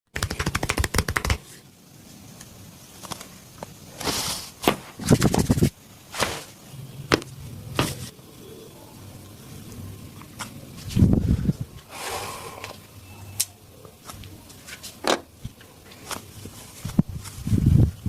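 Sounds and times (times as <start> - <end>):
massage slaps: 0.2 - 1.4
rubbing sounds: 0.2 - 1.6, 4.0 - 8.1.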